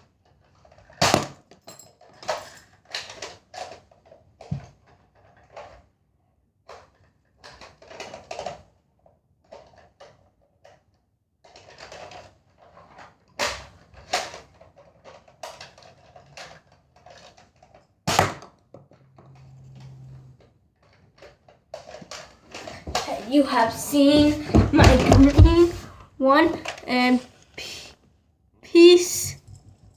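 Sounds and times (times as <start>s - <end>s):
toy blaster clicks and knocks: 2.2s - 5.8s, 6.7s - 8.7s.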